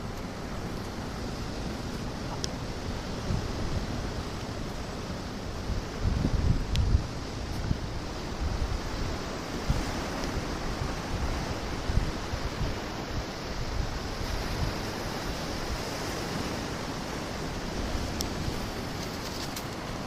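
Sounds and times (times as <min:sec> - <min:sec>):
ocean surf washing: 0:00.0 - 0:20.0
wind gusting on microphone: 0:00.0 - 0:20.0.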